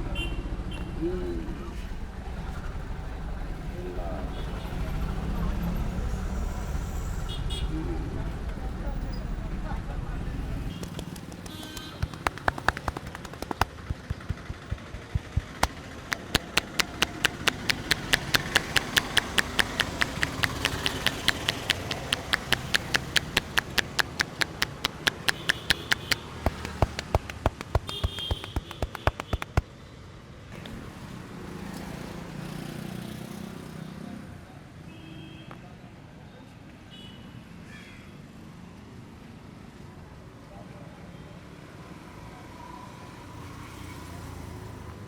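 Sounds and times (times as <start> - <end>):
hands slapping rhythmically: 10.8 - 29.7.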